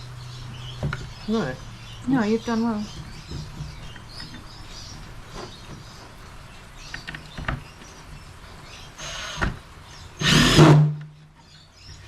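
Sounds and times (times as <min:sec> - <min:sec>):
scraping rustle: 0:02.9 - 0:06.4.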